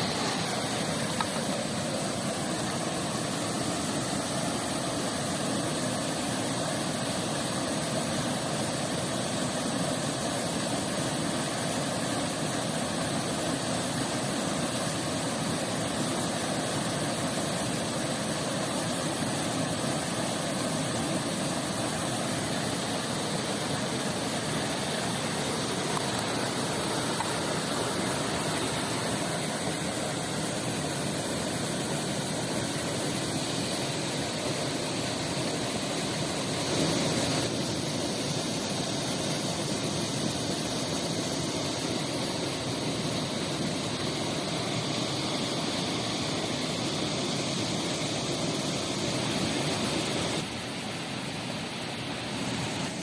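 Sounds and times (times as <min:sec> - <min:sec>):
river and waterfall rushing: 0:00.0 - 0:53.0.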